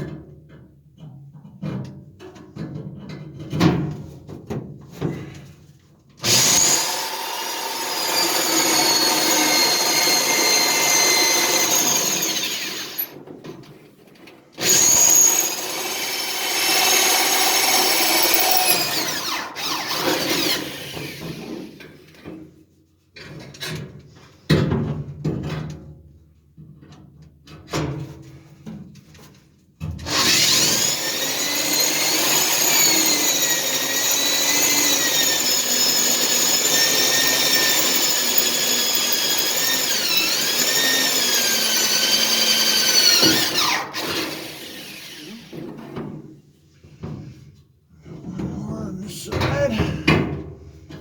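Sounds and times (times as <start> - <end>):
electric power tool whining: 6.3 - 13.1, 14.6 - 20.6, 30.2 - 45.6
parts knocking and clattering: 36.1 - 40.6.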